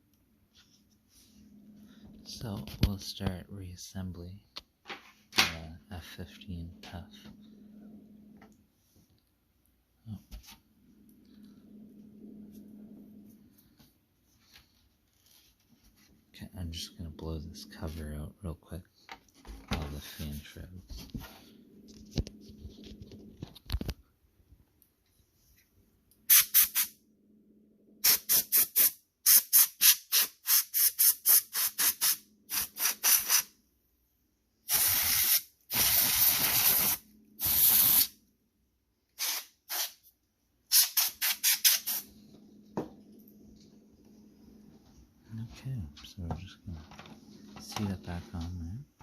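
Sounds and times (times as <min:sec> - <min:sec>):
compressed air hissing: 0:26.3 - 0:26.9, 0:28.0 - 0:33.5, 0:34.7 - 0:38.2, 0:39.2 - 0:40.0, 0:40.7 - 0:42.1.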